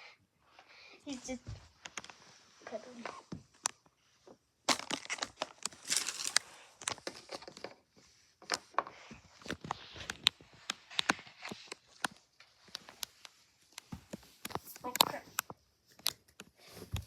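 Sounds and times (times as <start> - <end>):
packaging crinkling: 4.7 - 7.7.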